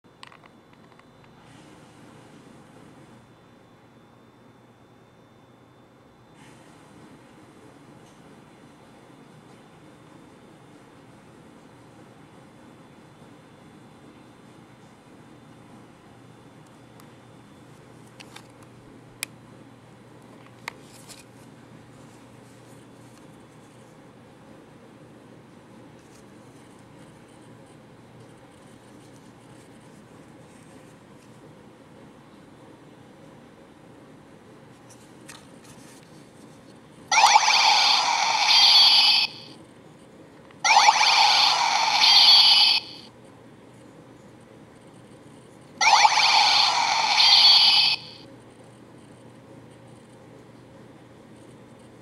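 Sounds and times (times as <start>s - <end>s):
steady low hum: 0.1s - 52.0s
toy mechanism clicks: 37.1s - 39.5s, 40.7s - 43.0s, 45.8s - 48.2s
toy electronic sound effects: 37.1s - 39.6s, 40.6s - 43.1s, 45.8s - 48.2s.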